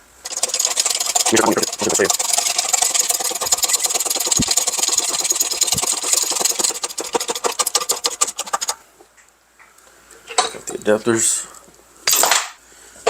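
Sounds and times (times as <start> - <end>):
press rapid mechanical chattering: 0.2 - 8.8.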